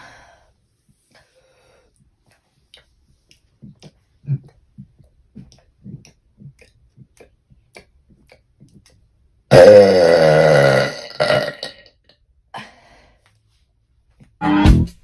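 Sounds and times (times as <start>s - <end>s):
woman burping: 9.5s - 11.9s.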